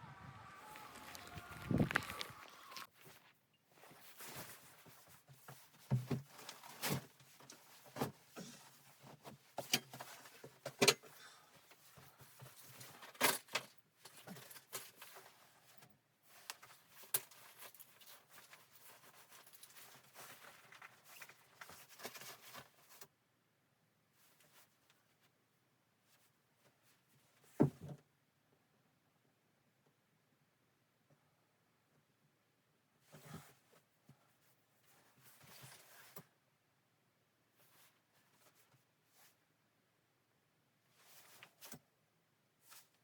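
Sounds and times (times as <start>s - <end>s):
rustling: 0.0s - 10.6s, 11.7s - 23.1s.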